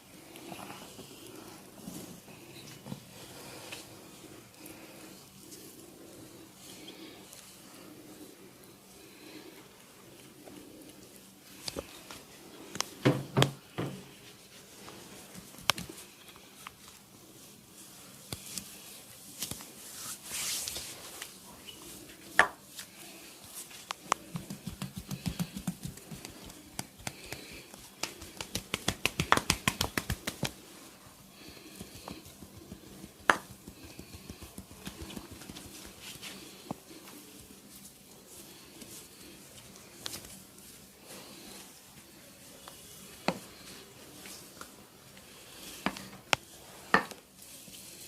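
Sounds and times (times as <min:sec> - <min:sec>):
hands slapping a body: 0:24.0 - 0:30.6, 0:31.8 - 0:36.1.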